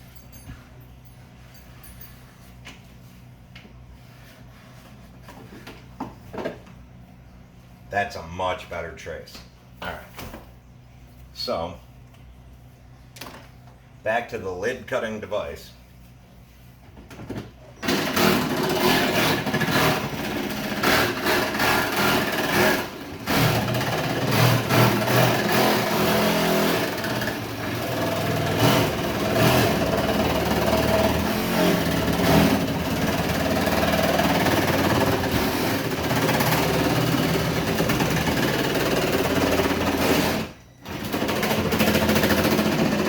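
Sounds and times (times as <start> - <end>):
power saw cutting plastic: 17.8 - 43.0.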